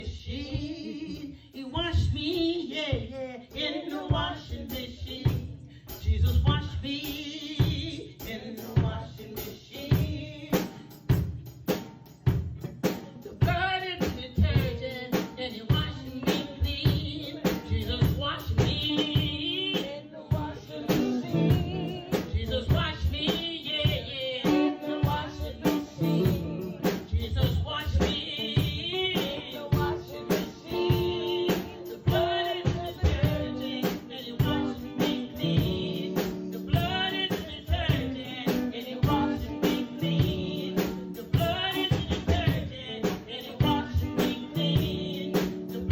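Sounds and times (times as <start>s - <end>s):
drum kit beat: 0.0s - 45.9s.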